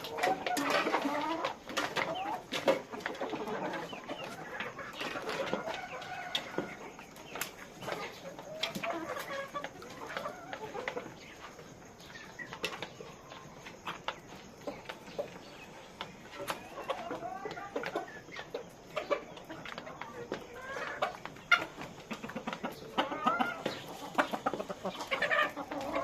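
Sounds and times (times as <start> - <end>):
hens clucking: 0.0 - 26.0.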